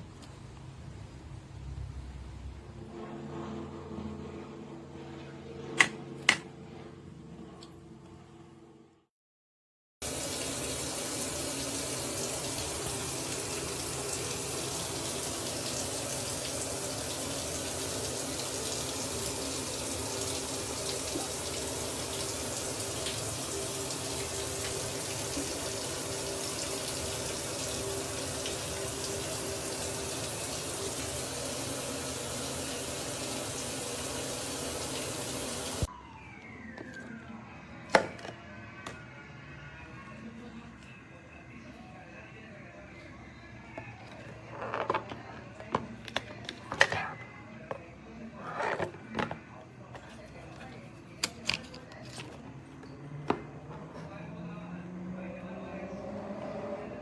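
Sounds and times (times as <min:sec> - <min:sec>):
shower water spraying: 0:10.0 - 0:35.9.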